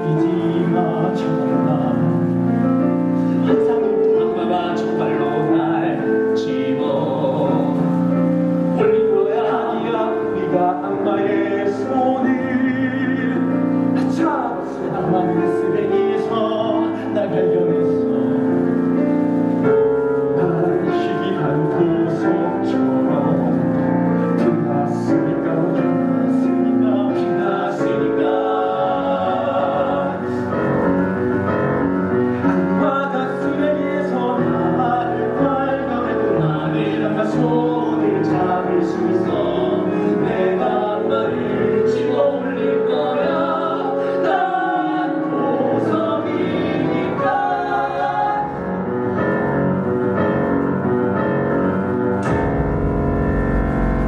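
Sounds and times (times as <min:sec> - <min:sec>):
instrumental accompaniment: 0:00.0 - 0:54.0
group of voices singing: 0:03.2 - 0:49.7.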